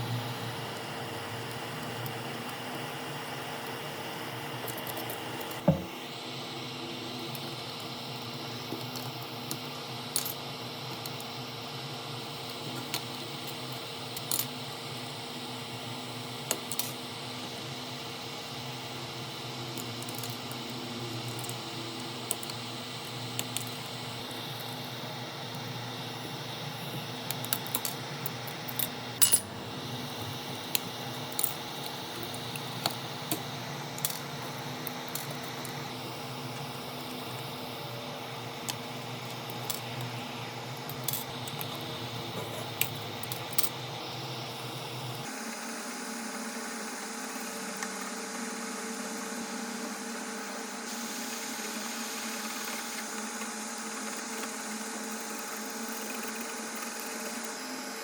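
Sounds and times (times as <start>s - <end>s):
steady hum: 5.3s - 10.8s, 18.6s - 46.0s.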